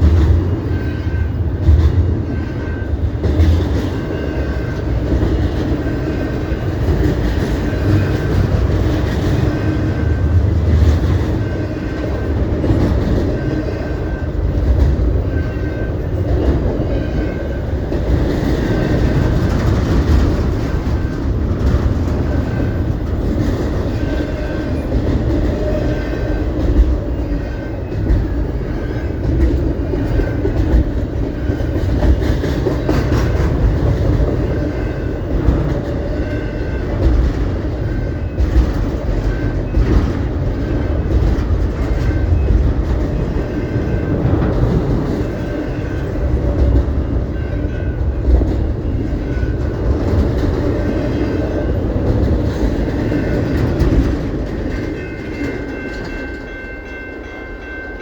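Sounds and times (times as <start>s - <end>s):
train rumbling past: 0.0s - 58.0s
wheels clacking over rail joints: 0.0s - 58.0s.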